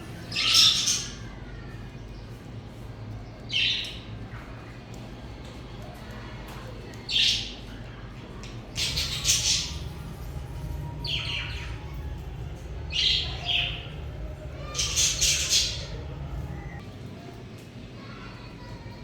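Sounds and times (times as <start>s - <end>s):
steady low hum: 8.0s - 17.8s
budgerigars chirping: 8.8s - 12.0s, 12.6s - 16.8s.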